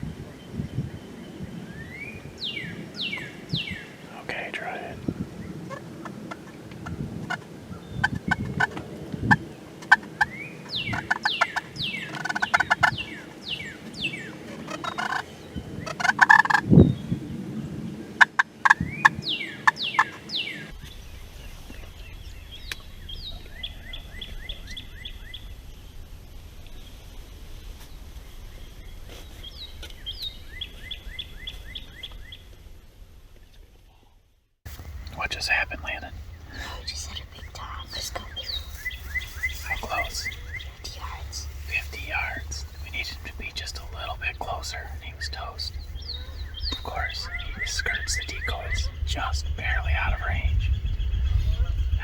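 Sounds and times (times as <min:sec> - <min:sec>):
wild turkeys calling: 0:34.8 - 0:50.4.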